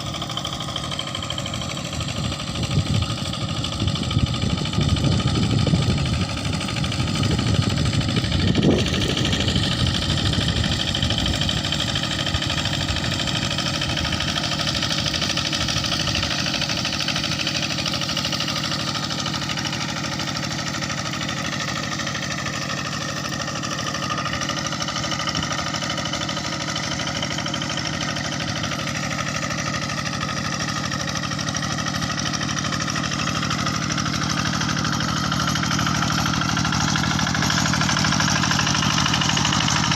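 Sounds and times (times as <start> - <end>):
diesel engine running: 0.0 - 39.9
heavy low rumble: 3.8 - 11.8.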